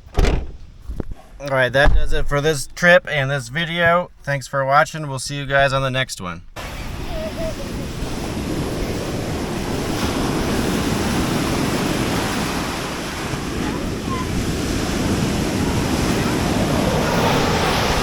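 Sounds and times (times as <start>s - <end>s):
wind buffeting microphone: 0.0s - 3.1s, 6.5s - 18.0s
ocean surf breaking: 6.6s - 18.0s.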